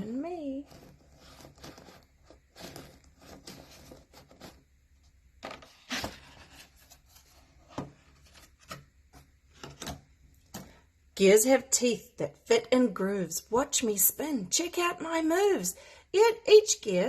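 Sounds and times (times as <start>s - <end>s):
book being handled: 0.7s - 10.8s.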